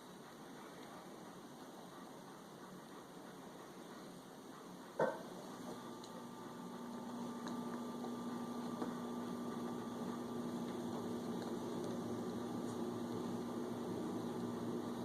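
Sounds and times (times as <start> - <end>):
electrical hum: 5.0 - 15.0.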